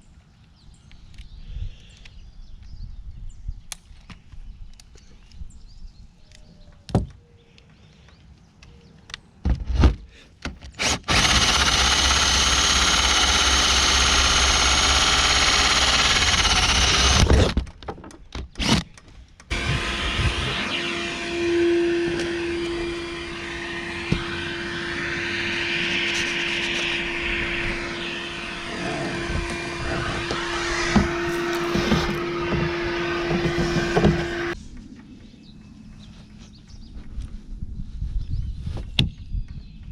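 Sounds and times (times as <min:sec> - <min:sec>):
cordless power tool running: 0:10.8 - 0:17.6, 0:19.5 - 0:34.6.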